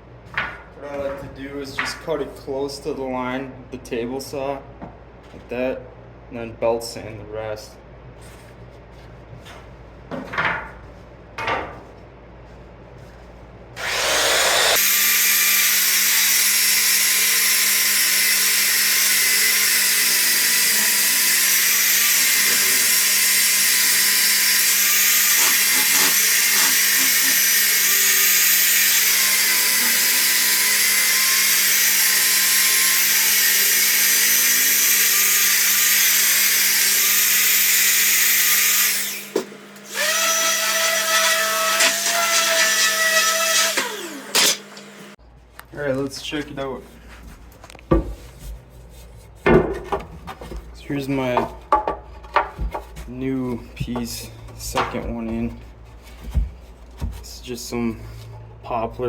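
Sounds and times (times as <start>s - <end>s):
belt sander sanding wood: 13.8s - 39.2s, 39.8s - 45.2s.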